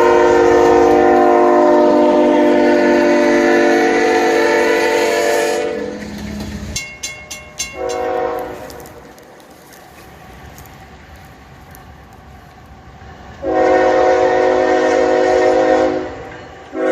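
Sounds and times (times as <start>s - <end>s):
locomotive air horn chord: 0.0s - 6.0s, 7.8s - 9.1s, 13.4s - 16.9s
train rumble: 0.0s - 16.9s
high-pitched rings: 6.7s - 8.2s.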